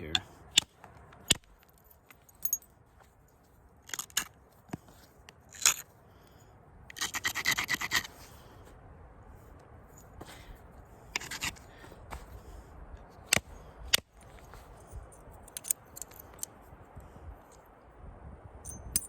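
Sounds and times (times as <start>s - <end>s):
scraping strokes on stone: 11.1s - 11.6s.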